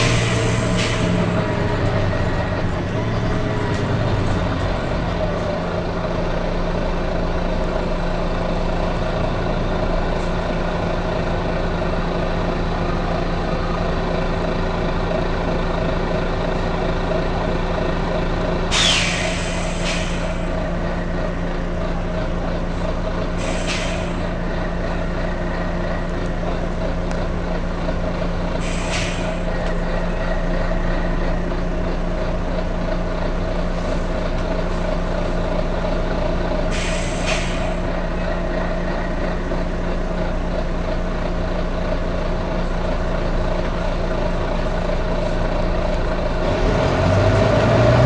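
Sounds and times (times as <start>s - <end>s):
diesel bus engine running: 0.0s - 48.0s
compressed air hisses: 18.7s - 20.3s, 23.4s - 24.1s, 28.6s - 29.2s.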